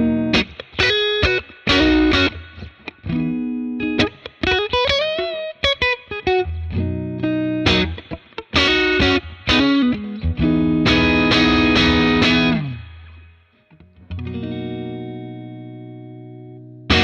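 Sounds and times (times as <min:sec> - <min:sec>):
electric guitar chords: 0:00.0 - 0:17.0.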